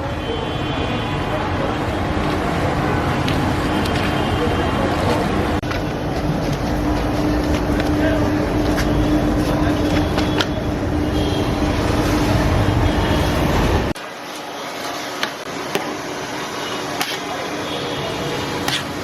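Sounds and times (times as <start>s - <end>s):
roaring rumble with low hum: 5.4s - 14.0s.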